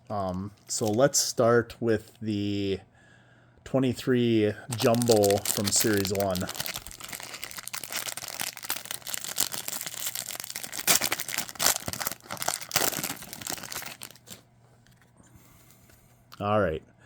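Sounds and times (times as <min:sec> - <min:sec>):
foil wrapper crinkling and tearing: 0:00.5 - 0:01.1, 0:04.7 - 0:14.4.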